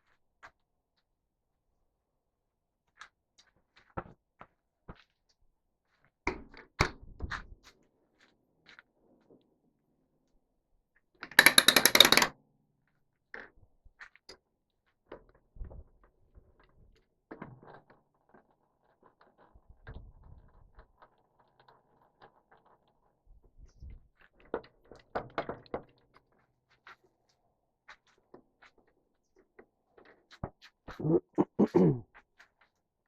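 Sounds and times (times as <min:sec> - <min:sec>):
clicks and knocks of handling: 0:11.2 - 0:12.3
loud rapid rattle: 0:11.4 - 0:12.3.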